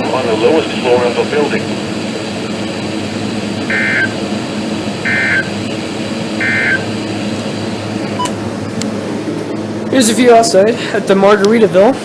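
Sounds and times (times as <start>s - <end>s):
steady low hum: 0.0s - 12.0s
digital data tone bursts: 3.7s - 4.2s, 5.0s - 5.6s, 6.4s - 6.9s.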